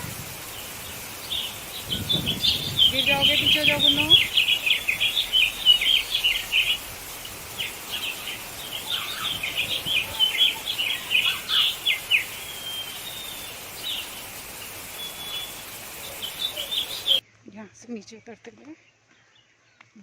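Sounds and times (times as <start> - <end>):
birds chirping: 0.0 - 18.3.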